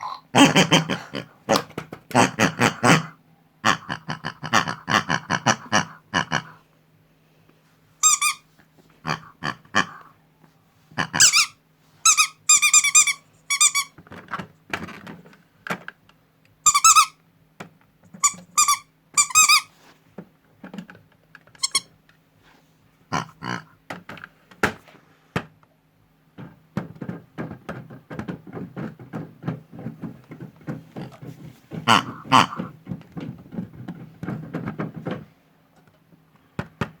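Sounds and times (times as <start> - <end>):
high-pitched squeaks: 8.0 - 8.4, 11.2 - 13.9, 16.7 - 17.1, 18.2 - 19.7, 21.6 - 21.9.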